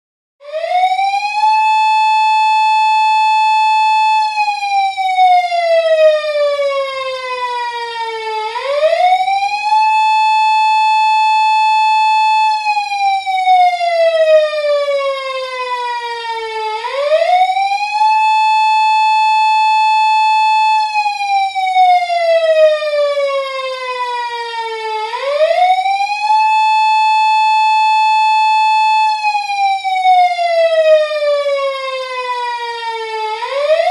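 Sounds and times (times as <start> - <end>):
police car siren wailing: 0.4 - 33.9.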